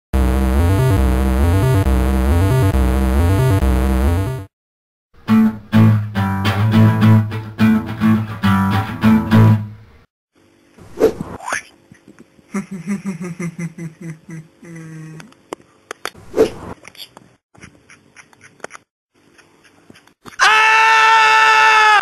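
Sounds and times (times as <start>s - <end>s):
music with stepping bass line: 0.2s - 4.5s
plucked guitar-like riff: 5.2s - 9.7s.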